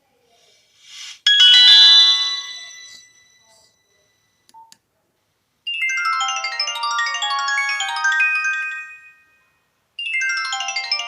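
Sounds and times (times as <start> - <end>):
mobile phone ringtone: 0.9 - 4.4, 5.7 - 11.0.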